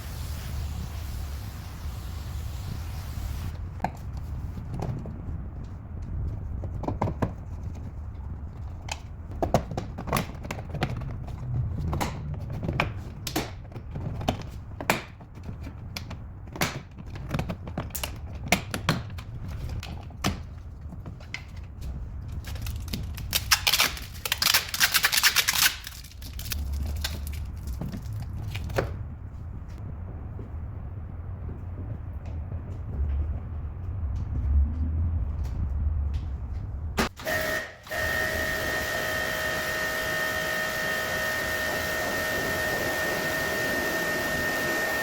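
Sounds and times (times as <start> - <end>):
dense scratchy hiss: 0.0 - 3.6.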